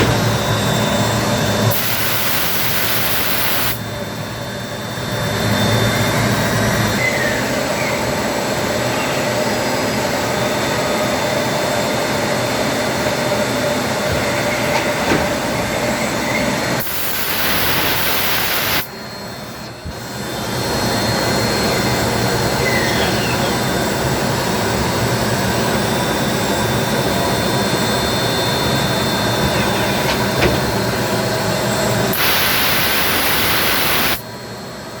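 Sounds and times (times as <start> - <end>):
lathe machining noise: 0.0 - 34.9
sharp hiss: 1.7 - 3.8, 16.8 - 18.9, 32.1 - 34.2.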